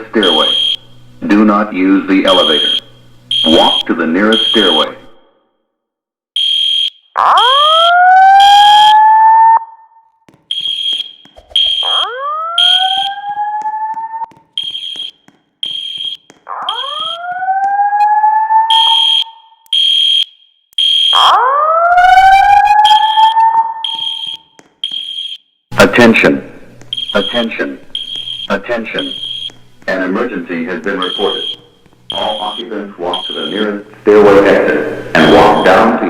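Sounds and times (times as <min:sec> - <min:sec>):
rising whoop alarm tone: 0:11.6 - 0:14.3, 0:16.5 - 0:19.4, 0:21.2 - 0:24.3.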